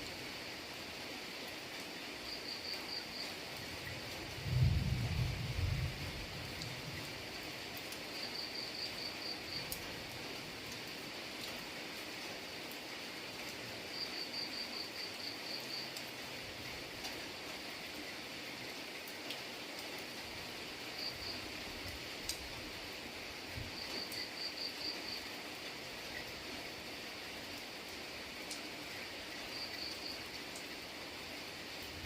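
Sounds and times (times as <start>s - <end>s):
steady rain falling: 0.0s - 32.0s
drip-like ticks: 7.8s - 11.6s, 13.4s - 16.2s, 19.1s - 20.1s, 21.0s - 22.4s, 28.4s - 30.8s.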